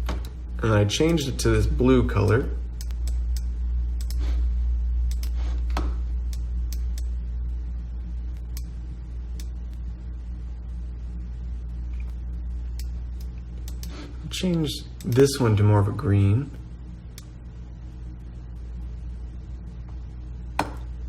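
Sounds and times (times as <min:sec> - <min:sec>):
low electrical hum: 0:00.0 - 0:21.0
computer mouse clicks: 0:02.2 - 0:04.2, 0:05.1 - 0:07.1.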